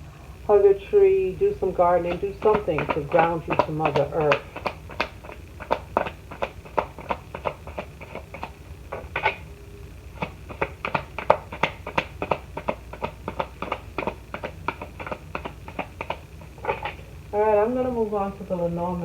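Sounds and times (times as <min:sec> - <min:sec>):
cards being shuffled: 0:01.4 - 0:09.5, 0:10.1 - 0:17.1.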